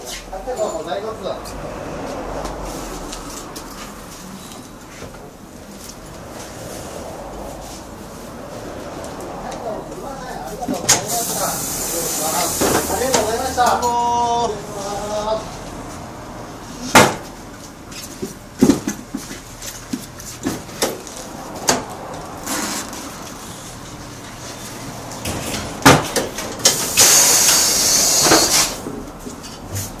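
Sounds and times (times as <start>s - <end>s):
air hiss: 11.0s - 13.2s, 26.6s - 28.8s
sharp knocks and clanks: 16.9s - 17.4s, 18.0s - 23.4s, 25.1s - 27.2s.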